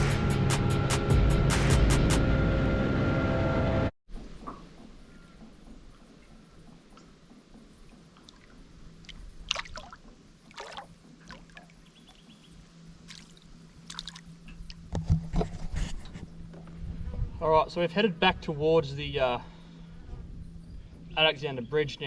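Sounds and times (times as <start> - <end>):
water lapping around boat: 4.2 - 17.3
faint steady hum: 4.5 - 22.0
knocks and splashes: 6.7 - 11.9, 13.0 - 15.6.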